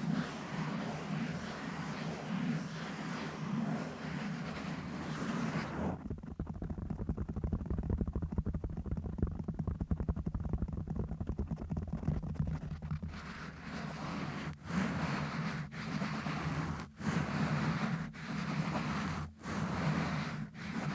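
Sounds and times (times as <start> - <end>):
scratching on microphone: 0.0 - 20.9.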